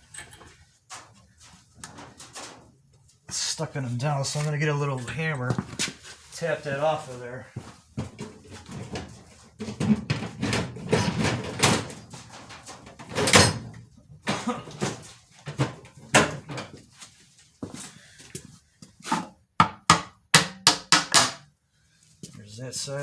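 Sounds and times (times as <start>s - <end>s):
metal tools clanking: 10.9s - 13.8s.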